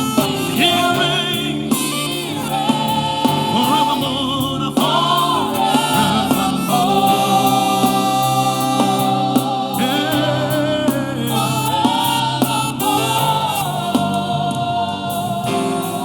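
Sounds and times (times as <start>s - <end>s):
choir and congregation singing: 0.0s - 16.0s
instrumental accompaniment with beat: 0.0s - 16.0s.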